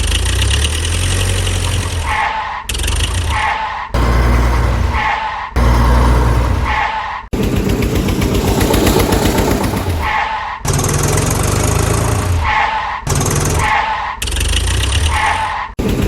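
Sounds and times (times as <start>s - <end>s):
low chugging engine sound: 4.0s - 10.2s.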